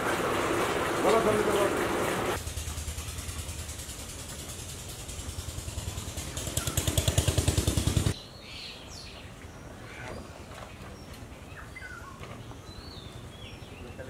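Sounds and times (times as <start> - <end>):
small engine running: 2.4 - 8.2
birds chirping: 5.0 - 14.0.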